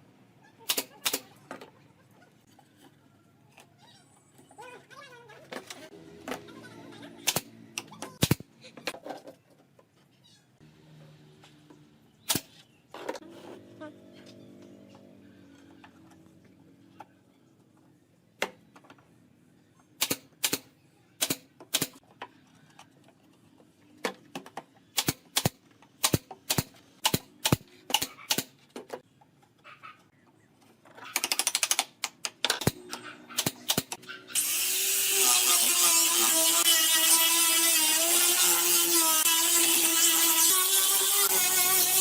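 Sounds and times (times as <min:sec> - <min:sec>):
power tool running: 0:33.7 - 0:42.0.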